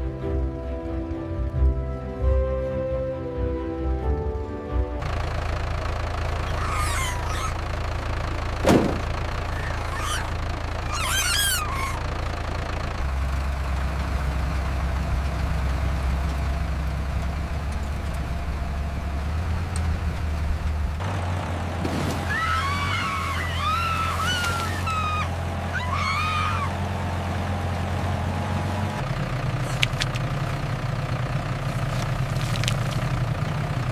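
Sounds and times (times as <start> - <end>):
tractor engine running: 0.0 - 33.9
high wavering cries: 6.4 - 7.8, 9.4 - 12.4, 22.2 - 26.8
sharp knock: 8.6 - 9.1.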